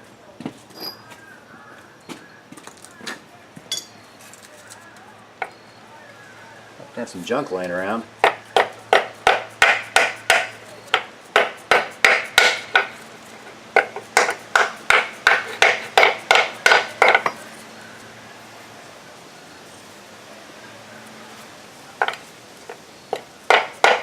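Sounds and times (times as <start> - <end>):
hammer striking metal: 8.2 - 12.9.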